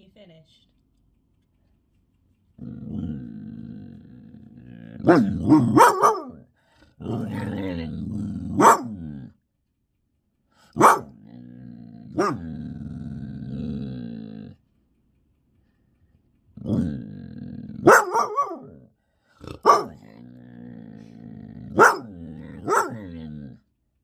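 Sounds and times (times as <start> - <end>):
dog growling: 2.6 - 9.4, 10.6 - 14.7, 16.5 - 23.7
dog barking: 5.0 - 6.5, 8.5 - 9.1, 10.7 - 11.2, 12.1 - 12.6, 17.8 - 18.9, 19.5 - 20.1, 21.7 - 23.2.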